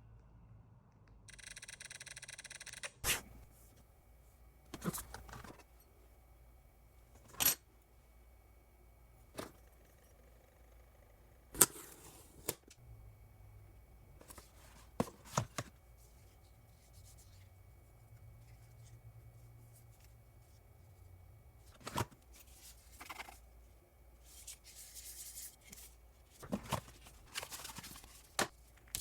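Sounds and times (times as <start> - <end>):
packaging being handled: 24.2 - 29.0.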